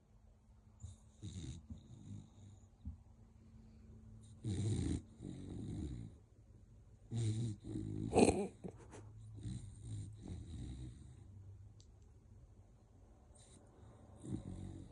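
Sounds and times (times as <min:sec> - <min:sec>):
dog snoring: 0:00.8 - 0:02.7, 0:04.2 - 0:06.2, 0:07.1 - 0:11.3, 0:13.4 - 0:14.9.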